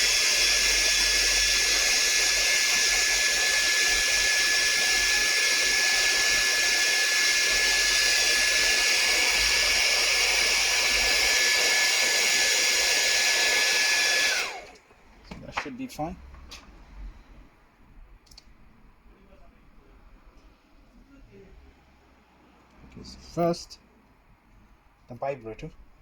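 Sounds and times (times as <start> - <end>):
hot-air gun blowing: 0.0 - 14.8.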